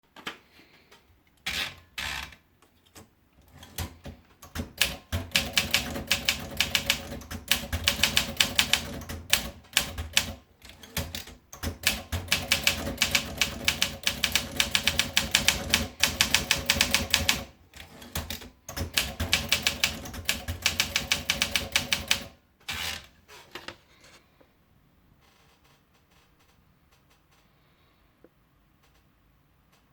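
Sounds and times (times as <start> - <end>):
manual typewriter keystrokes: 3.6 - 22.4.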